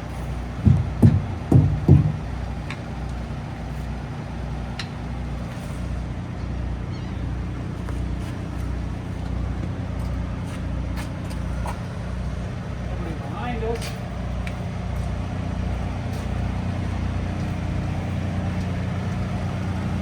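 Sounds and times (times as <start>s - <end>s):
diesel truck engine idling: 0.0s - 20.0s.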